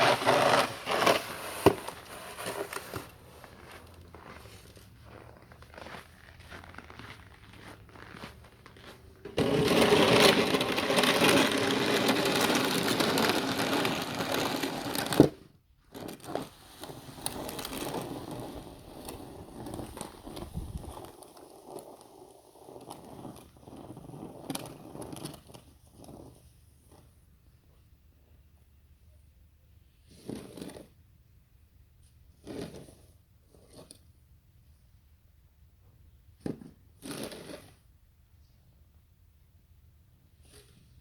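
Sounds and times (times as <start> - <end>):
snow scraping and crunching: 0.0 - 15.3, 16.2 - 25.1.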